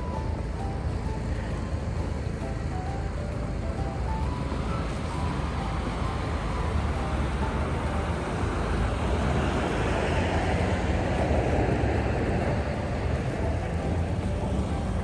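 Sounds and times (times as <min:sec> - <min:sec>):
road traffic rumble: 0:00.0 - 0:15.0
vehicle passing close by: 0:03.8 - 0:15.0.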